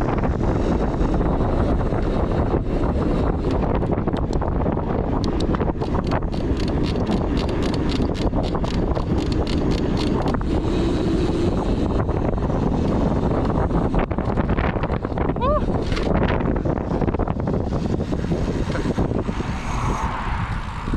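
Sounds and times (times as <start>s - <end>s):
wind buffeting microphone: 0.0s - 20.9s
bike clicks and rattles: 3.2s - 10.6s, 12.8s - 19.0s.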